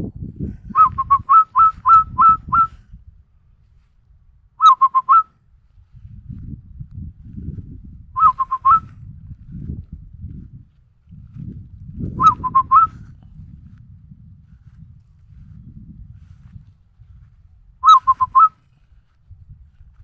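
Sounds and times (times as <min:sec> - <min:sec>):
person whistling bird call: 0:00.7 - 0:02.8, 0:04.6 - 0:05.3, 0:08.2 - 0:08.9, 0:12.2 - 0:13.0, 0:17.8 - 0:18.6.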